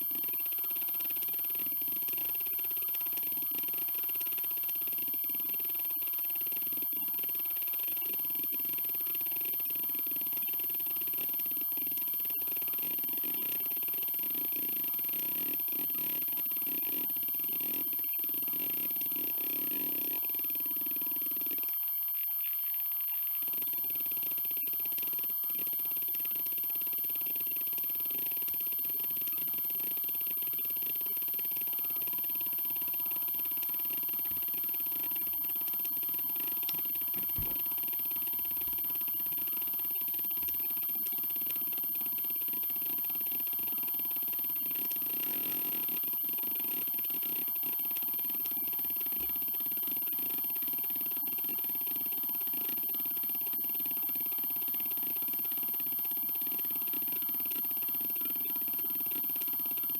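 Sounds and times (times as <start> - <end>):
hard drive head ticking and buzzing: 0.0 - 59.9
hard drive platters spinning: 32.7 - 40.2.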